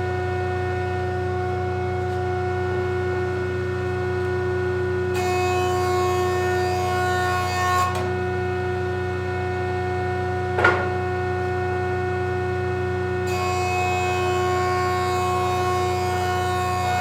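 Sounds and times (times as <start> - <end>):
jointer motor whine: 0.0 - 17.0
short knock: 10.6 - 11.0.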